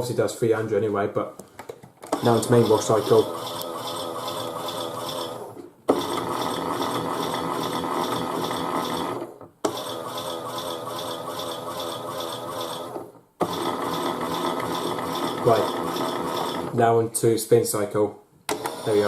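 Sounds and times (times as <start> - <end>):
toy washing machine motor whirring: 2.1 - 16.8, 18.5 - 19.0.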